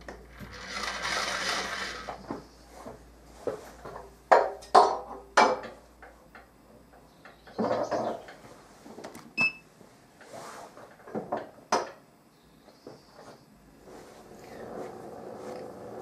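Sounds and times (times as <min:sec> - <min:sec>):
rough scraping: 0:00.4 - 0:02.2.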